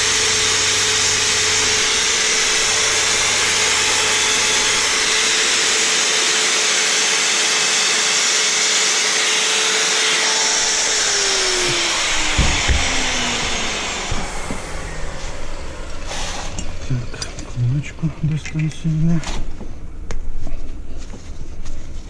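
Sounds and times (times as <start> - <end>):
electric machine hissing and humming: 0.0 - 18.0
low knocks: 11.6 - 14.7.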